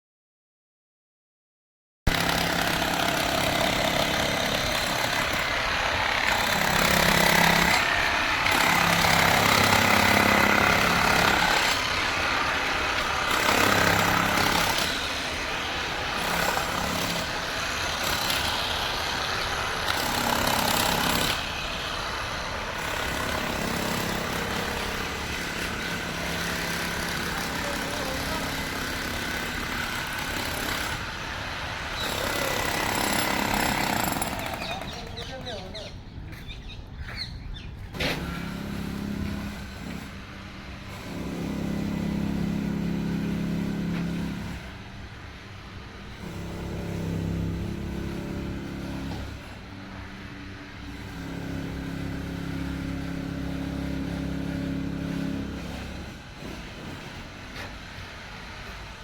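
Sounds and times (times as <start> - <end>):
electric demolition hammer rattling: 2.1 - 35.6, 38.0 - 45.3.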